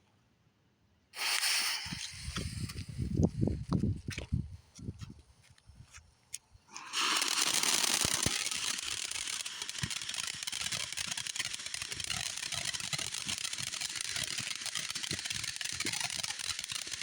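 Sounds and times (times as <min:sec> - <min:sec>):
firework pops: 0:01.2 - 0:03.3, 0:07.0 - 0:17.0
firework hissing and crackling: 0:01.2 - 0:03.6, 0:06.7 - 0:17.0.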